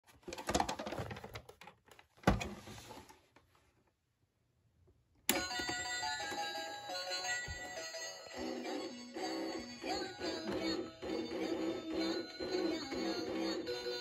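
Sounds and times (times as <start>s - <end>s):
singing fish toy song: 7.1s - 14.0s.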